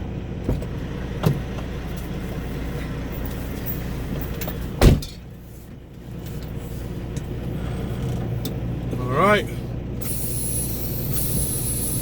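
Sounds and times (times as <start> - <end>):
diesel truck engine idling: 0.0 - 12.0
loud thump: 4.8 - 5.2.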